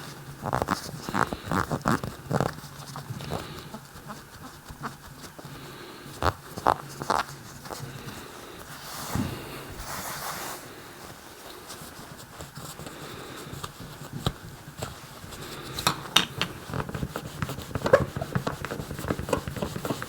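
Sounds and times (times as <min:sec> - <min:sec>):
cloth rubbing on plastic: 0:00.0 - 0:15.8, 0:16.4 - 0:20.0.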